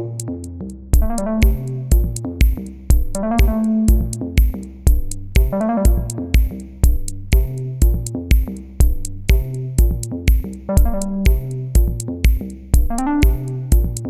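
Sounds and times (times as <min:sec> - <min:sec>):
synthesizer melody: 0:01.0 - 0:02.2, 0:03.0 - 0:04.4, 0:05.4 - 0:06.5, 0:10.7 - 0:11.7, 0:12.9 - 0:14.0
hi-hats: 0:01.0 - 0:14.0
kick drum: 0:01.0 - 0:14.0.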